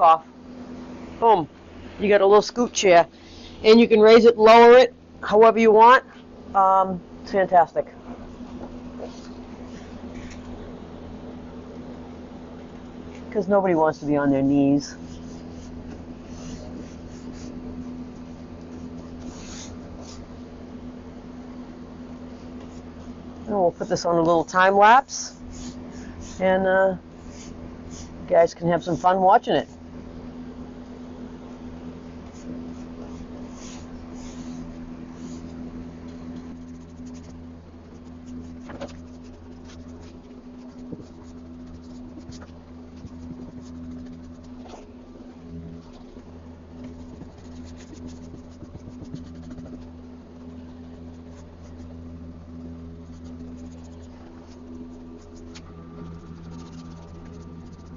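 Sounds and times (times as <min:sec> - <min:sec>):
steady low hum: 0:00.0 - 0:57.9
paintbrush swishing strokes: 0:15.0 - 0:20.4, 0:25.2 - 0:28.3, 0:32.2 - 0:35.7, 0:36.4 - 0:44.9, 0:46.8 - 0:57.9.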